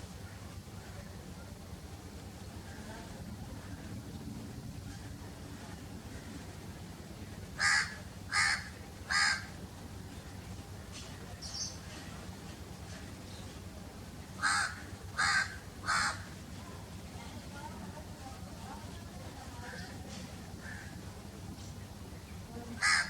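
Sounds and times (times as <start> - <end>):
steady low rumble: 0.0 - 22.7
crow cawing: 7.6 - 9.5, 14.4 - 16.4, 20.6 - 21.0, 22.8 - 23.0.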